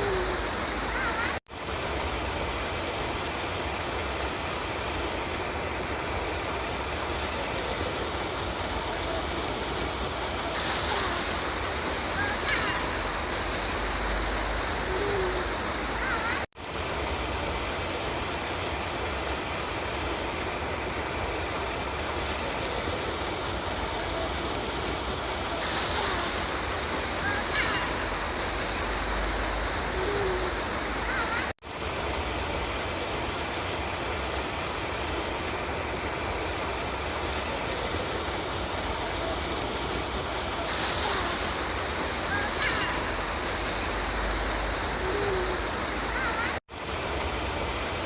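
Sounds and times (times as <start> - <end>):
river water rushing: 0.0 - 48.0
faint calls: 10.4 - 16.5, 25.5 - 31.5, 40.6 - 46.6.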